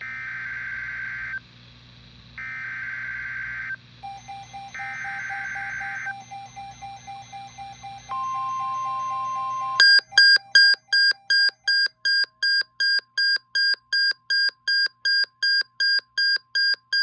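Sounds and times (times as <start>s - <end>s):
steady alert tone: 4.0s - 11.7s
short high electronic beeps: 4.0s - 11.8s.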